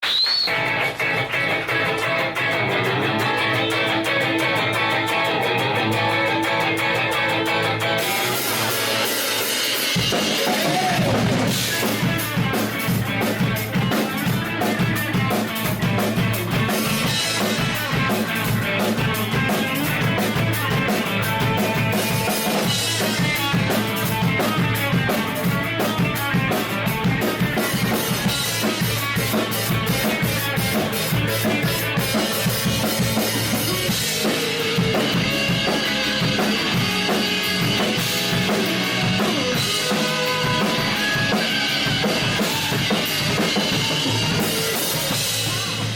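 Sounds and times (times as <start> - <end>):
drum kit beat: 0.0 - 45.9
rock band playing live: 0.0 - 45.9.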